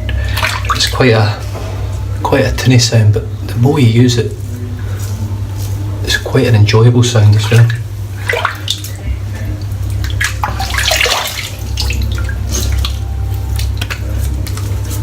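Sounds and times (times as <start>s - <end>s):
water running from a tap: 0.0s - 1.4s, 6.1s - 14.7s
water splashing: 0.0s - 15.0s.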